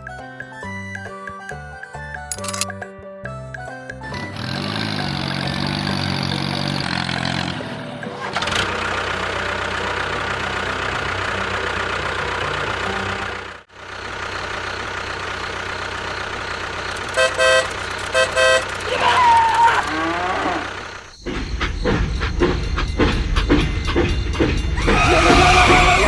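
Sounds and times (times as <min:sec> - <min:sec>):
music: 0:00.0 - 0:13.7
vehicle engine running: 0:04.1 - 0:26.0
horn short toots: 0:17.0 - 0:20.7.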